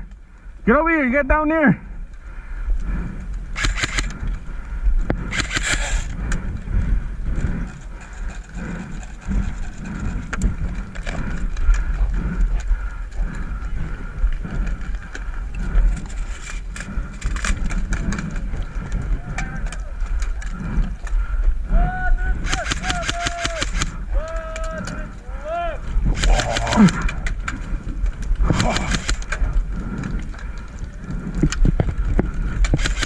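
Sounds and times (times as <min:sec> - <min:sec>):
wind rumbling on microphone: 0:00.0 - 0:33.0
sharp clicks: 0:03.6 - 0:04.4, 0:05.0 - 0:06.5, 0:22.4 - 0:25.1, 0:26.0 - 0:33.0
footsteps on rough ground: 0:22.4 - 0:33.0.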